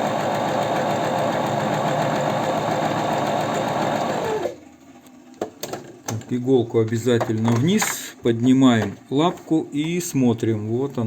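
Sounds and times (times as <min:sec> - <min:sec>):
sewing machine running: 0:00.0 - 0:04.6.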